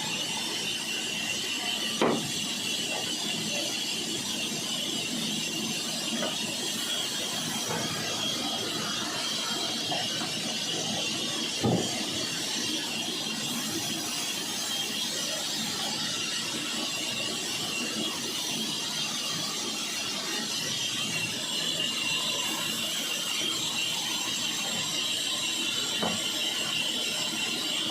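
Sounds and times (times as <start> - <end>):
saw running with high whine: 0.0 - 27.9
knock: 2.0 - 2.2.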